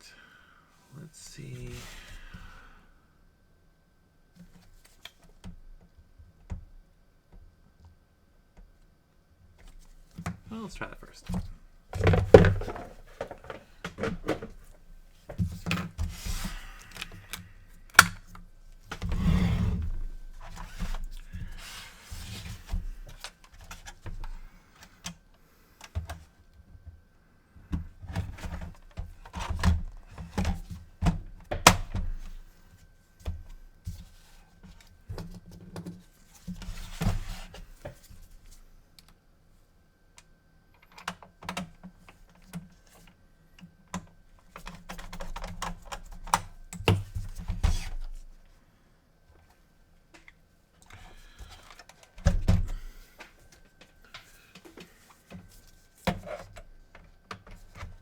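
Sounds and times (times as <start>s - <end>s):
plastic parts clicking and tapping: 12.0s - 14.8s.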